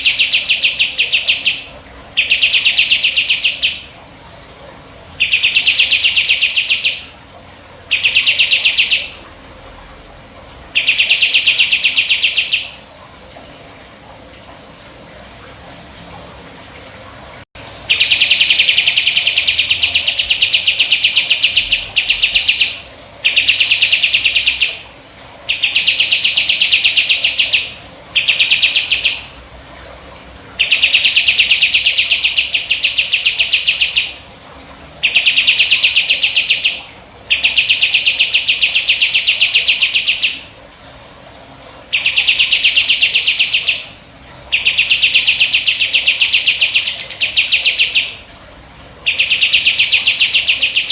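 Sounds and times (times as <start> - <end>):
songbird singing fast trills: 5.2 - 7.0, 44.5 - 48.2, 49.1 - 50.9.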